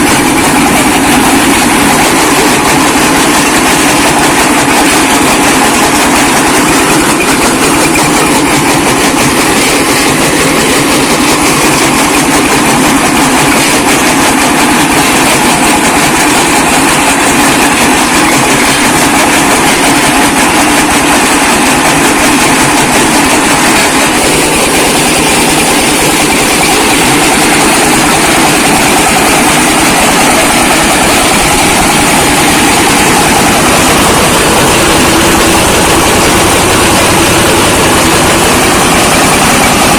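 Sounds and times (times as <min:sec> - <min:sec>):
brick breaker machine clattering: 0:00.0 - 0:39.9.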